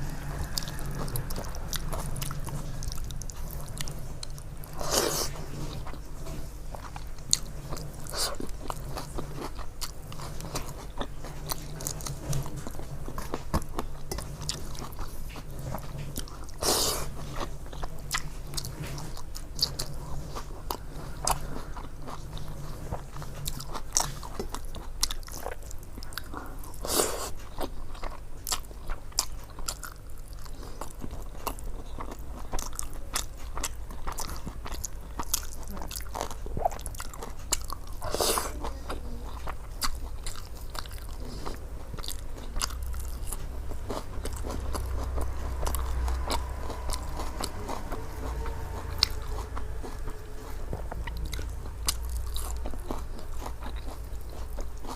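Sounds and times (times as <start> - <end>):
person chewing food: 0.0 - 54.9
steady low hum: 0.0 - 54.9.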